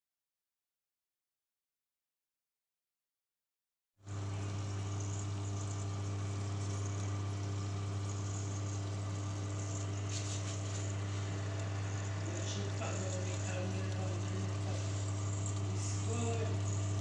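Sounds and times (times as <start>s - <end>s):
kitchen appliance electric hum: 4.0s - 17.0s.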